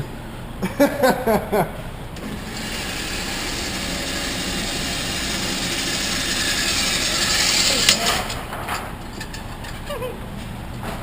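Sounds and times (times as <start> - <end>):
motorized target carrier whirring: 2.2 - 8.5.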